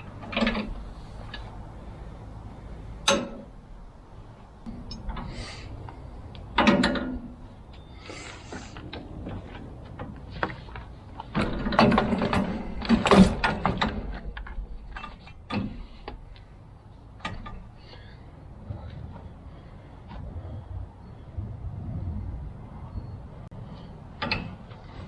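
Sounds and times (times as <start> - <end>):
metal clanks of tools: 3.0 - 3.5, 6.6 - 7.3, 11.3 - 16.0.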